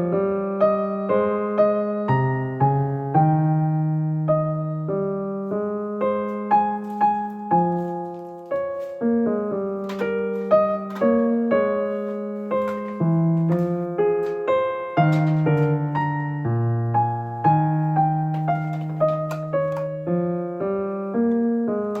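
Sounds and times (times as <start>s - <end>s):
gentle piano melody: 0.0s - 22.0s.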